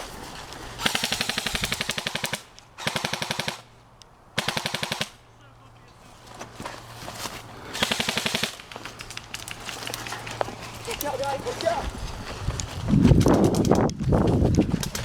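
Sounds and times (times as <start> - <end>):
airsoft gun firing bursts: 0.8 - 3.7, 4.4 - 5.2, 7.7 - 9.4.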